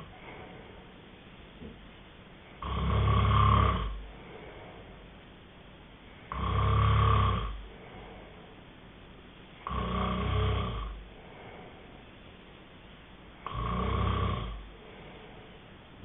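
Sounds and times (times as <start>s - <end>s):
person snoring: 2.6s - 4.8s, 6.2s - 8.3s, 9.6s - 11.8s, 13.4s - 15.3s.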